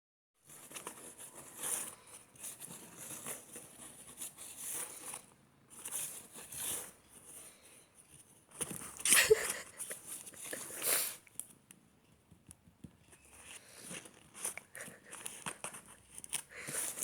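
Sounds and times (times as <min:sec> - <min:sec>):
faint rustling and crinkling: 0:00.4 - 0:17.0.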